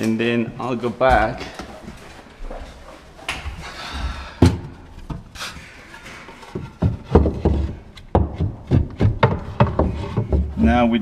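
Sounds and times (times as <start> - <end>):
wooden knocks and clunks: 3.3 - 11.0.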